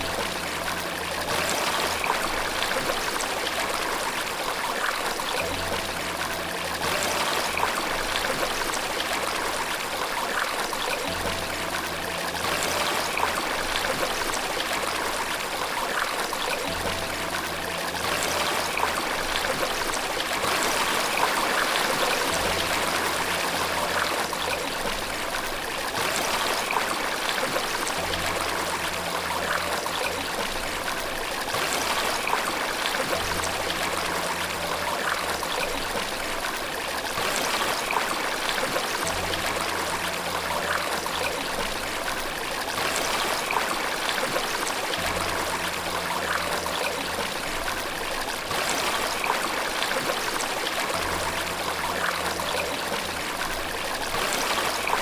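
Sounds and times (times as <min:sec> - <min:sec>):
soft low music notes: 0:00.0 - 0:55.0
water rushing and splashing: 0:00.0 - 0:55.0.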